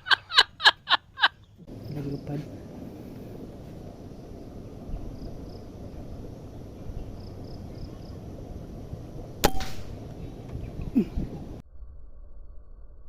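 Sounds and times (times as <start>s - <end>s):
air rifle shot: 9.4s - 10.0s.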